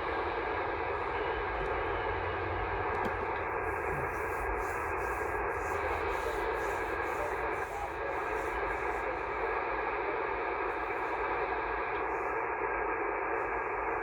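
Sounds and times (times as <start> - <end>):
radio static hiss: 0.1 - 14.0.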